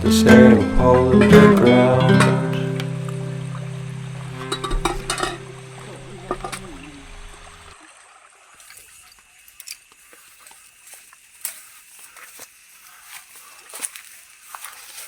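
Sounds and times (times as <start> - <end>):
song: 0.0 - 7.0
trickling river water: 2.0 - 15.0.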